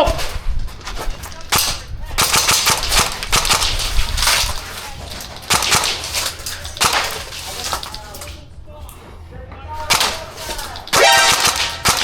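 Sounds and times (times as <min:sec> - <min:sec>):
airsoft guns firing bursts: 0:01.4 - 0:04.8, 0:05.4 - 0:08.0, 0:09.9 - 0:12.0.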